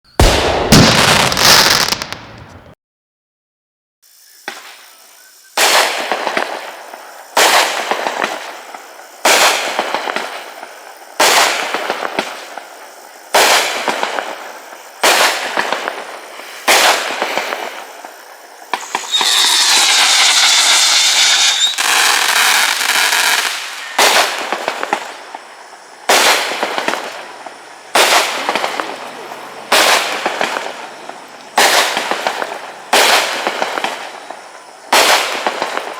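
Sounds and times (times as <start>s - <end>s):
high firework whistle: 0.1s - 2.8s, 16.6s - 25.4s
firework shots with crackle: 0.2s - 2.8s, 5.6s - 29.1s, 29.7s - 35.9s.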